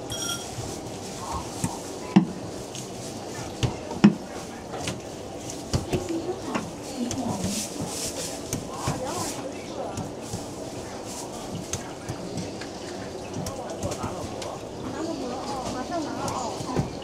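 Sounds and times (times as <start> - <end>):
dishes and utensils clattering: 0.0 - 0.7
hubbub of voices: 0.0 - 17.0.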